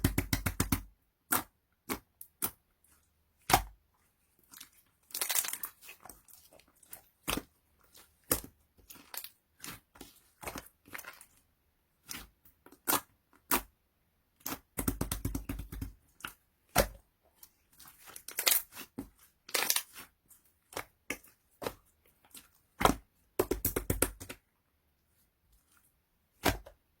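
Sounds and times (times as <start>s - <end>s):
slime squished by hand: 4.4s - 11.4s.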